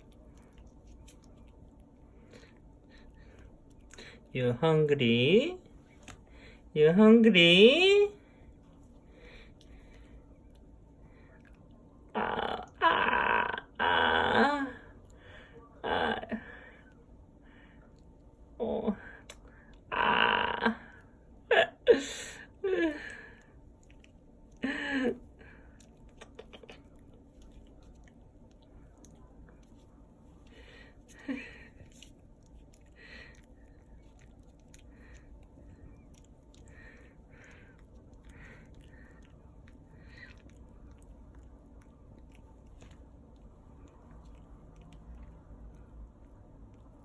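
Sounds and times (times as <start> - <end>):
puppy chewing food: 0.0 - 4.4, 8.2 - 12.2, 23.0 - 47.0.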